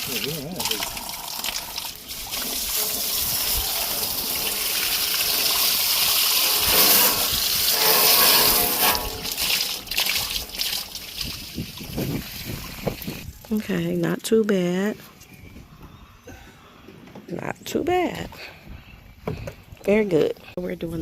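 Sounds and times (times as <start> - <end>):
pressure washer spraying siding: 0.0 - 13.2.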